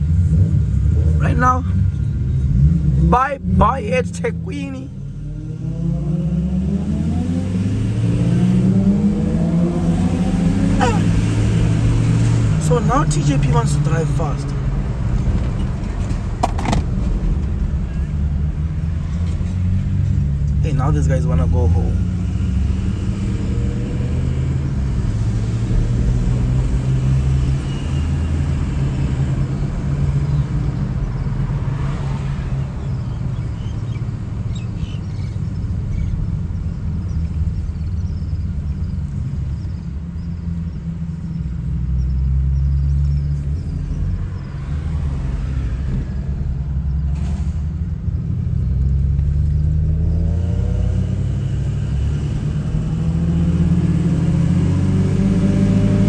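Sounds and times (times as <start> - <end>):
car engine and road noise: 0.0 - 56.0.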